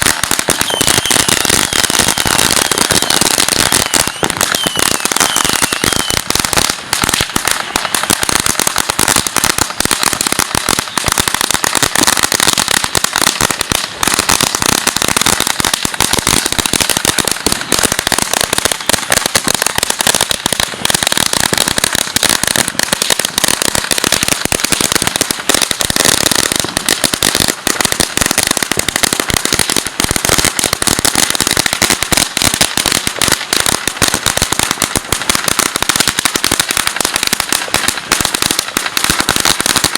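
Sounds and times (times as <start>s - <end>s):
firecrackers popping: 0.0s - 39.9s.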